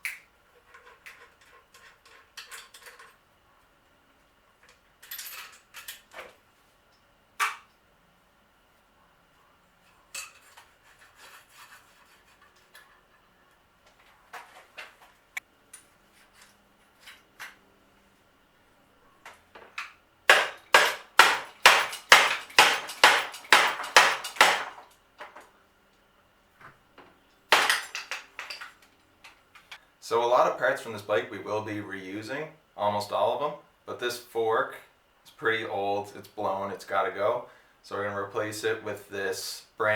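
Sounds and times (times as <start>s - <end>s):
metal clicks and knocks: 19.3s - 25.5s
loud tool strokes: 20.3s - 24.8s.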